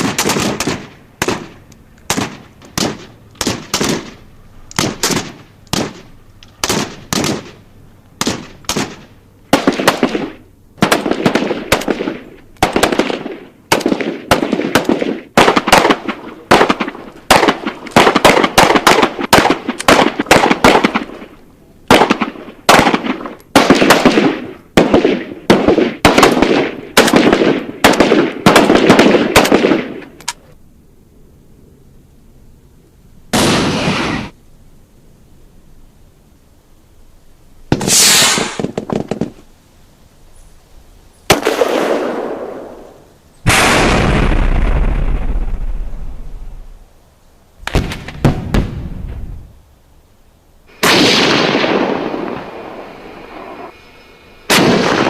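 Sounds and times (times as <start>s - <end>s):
single gunshots: 0.0s - 4.2s, 4.8s - 7.6s, 8.2s - 21.3s, 21.9s - 30.2s, 33.3s - 34.3s, 37.7s - 39.4s, 41.3s - 45.6s, 47.6s - 49.2s, 50.7s - 52.8s, 54.5s - 55.0s
rapid automatic gunfire: 8.2s - 21.2s, 21.9s - 29.9s.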